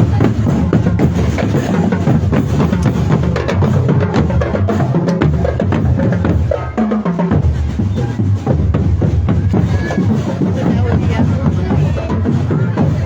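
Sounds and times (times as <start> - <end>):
bass drums thudding: 0.0 - 6.6.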